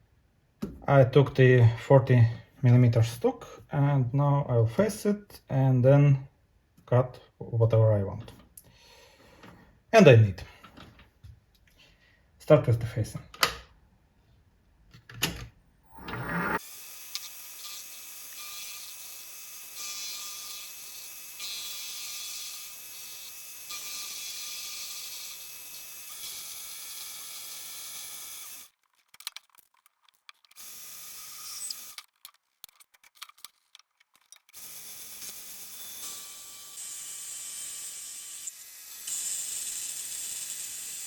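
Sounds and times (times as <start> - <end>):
lathe running with high hiss: 15.9 - 16.6.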